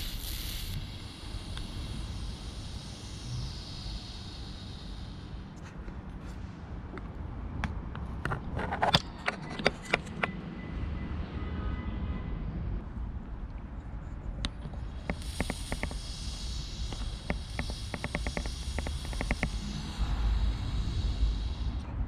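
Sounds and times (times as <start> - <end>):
arc lighter clicks and crackles: 15.0 - 19.6.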